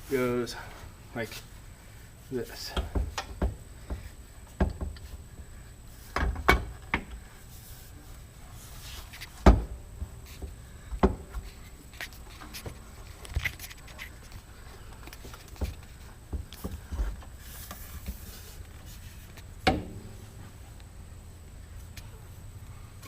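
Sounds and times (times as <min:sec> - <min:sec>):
knocks and clunks of tools: 0:02.7 - 0:04.0, 0:06.2 - 0:07.1.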